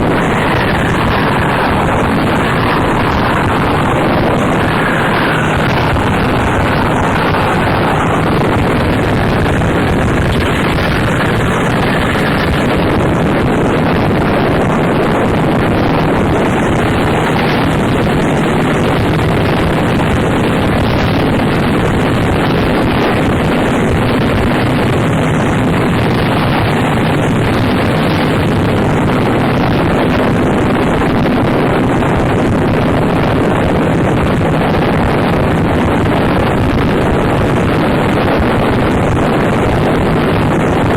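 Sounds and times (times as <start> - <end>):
harsh distorted noise music: 0.0 - 29.9
low drones: 0.0 - 40.9.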